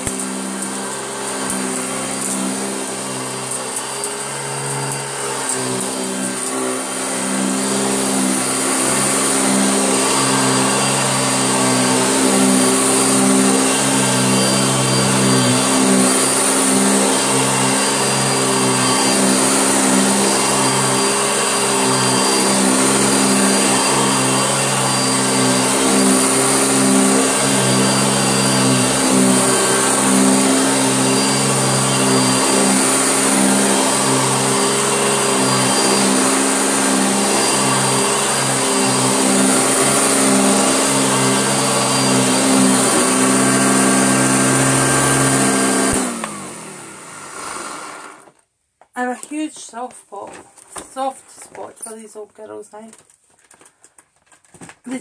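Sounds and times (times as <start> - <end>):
upright vacuum cleaner running: 0.0 - 48.5.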